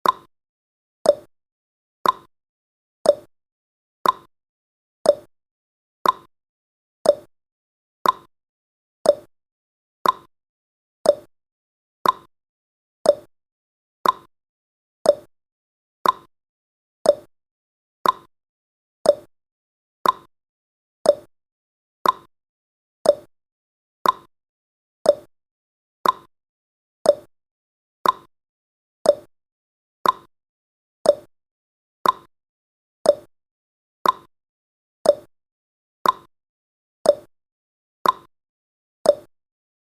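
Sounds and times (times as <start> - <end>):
timer ticking clicks: 0.0 - 0.3, 1.0 - 1.3, 2.0 - 2.3, 3.0 - 3.3, 4.0 - 4.3, 5.0 - 5.3, 6.0 - 6.3, 7.0 - 7.3, 8.0 - 8.3, 9.0 - 9.3, 10.0 - 10.3, 11.0 - 11.3, 12.0 - 12.3, 13.0 - 13.3, 14.0 - 14.3, 15.0 - 15.3, 16.0 - 16.3, 17.0 - 17.3, 18.0 - 18.3, 19.0 - 19.3, 20.0 - 20.3, 21.0 - 21.3, 22.0 - 22.3, 23.0 - 23.3, 24.0 - 24.3, 25.0 - 25.3, 26.0 - 26.3, 27.0 - 27.3, 28.0 - 28.3, 29.0 - 29.3, 30.0 - 30.3, 31.0 - 31.3, 32.0 - 32.3, 33.0 - 33.3, 34.0 - 34.3, 35.0 - 35.3, 36.0 - 36.3, 37.0 - 37.3, 38.0 - 38.3, 39.0 - 39.3.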